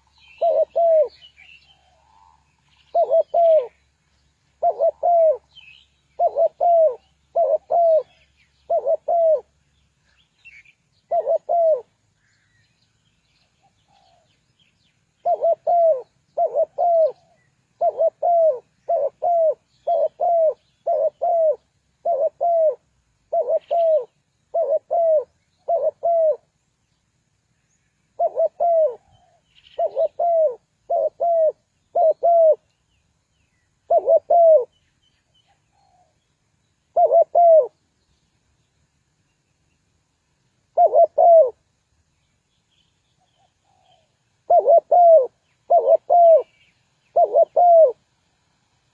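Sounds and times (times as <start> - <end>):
dove cooing: 0.0 - 3.9, 4.6 - 9.6, 10.5 - 12.0, 15.2 - 26.5, 28.1 - 32.7, 33.8 - 34.8, 36.9 - 37.8, 40.7 - 41.6, 43.2 - 48.1.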